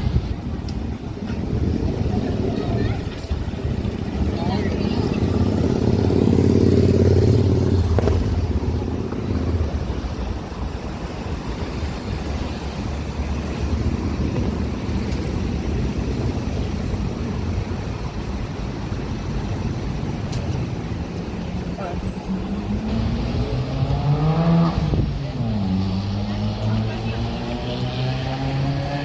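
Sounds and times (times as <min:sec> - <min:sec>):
traffic rumble: 0:00.0 - 0:29.0
vehicle engine passing close: 0:01.4 - 0:10.5.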